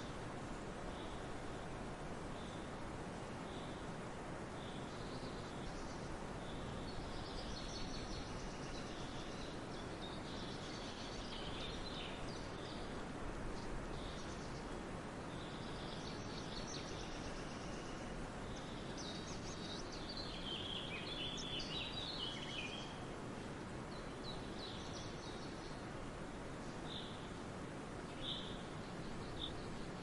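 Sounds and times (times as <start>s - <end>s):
steady background hiss: 0.0s - 30.0s.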